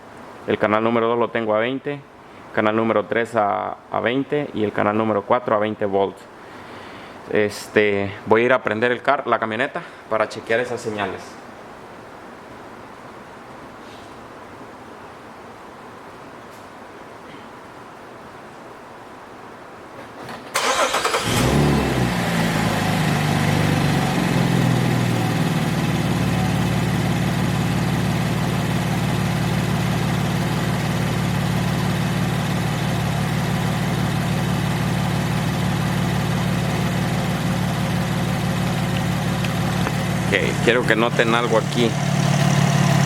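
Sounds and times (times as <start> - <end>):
car engine starting and idling: 20.3 - 43.0.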